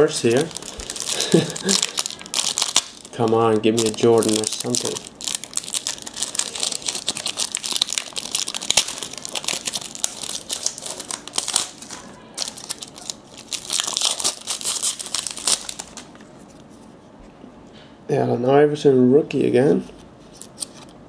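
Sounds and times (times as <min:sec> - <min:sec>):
wrapper crinkling and tearing: 0:00.0 - 0:16.2.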